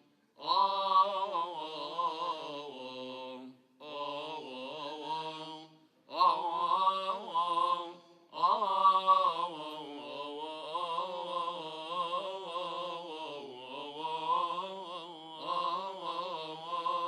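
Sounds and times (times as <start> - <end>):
man chanting: 0.4 - 17.0
breaths: 8.0 - 8.4.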